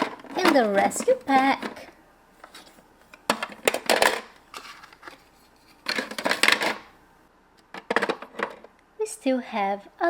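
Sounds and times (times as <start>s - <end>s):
plastic toy pieces clattering: 3.3s - 6.9s.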